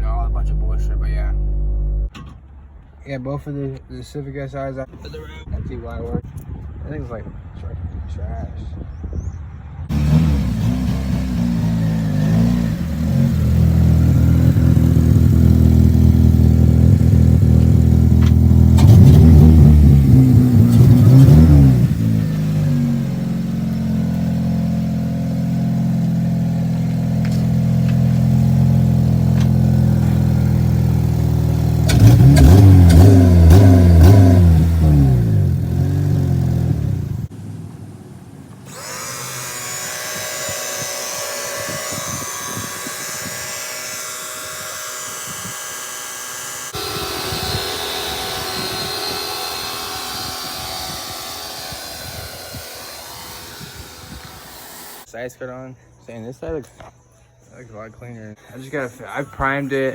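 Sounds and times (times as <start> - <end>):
car engine revving: 9.9 - 55.1.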